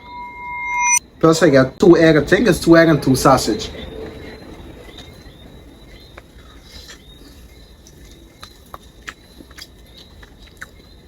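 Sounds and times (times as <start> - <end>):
faint high-pitched tone: 0.0 - 1.0.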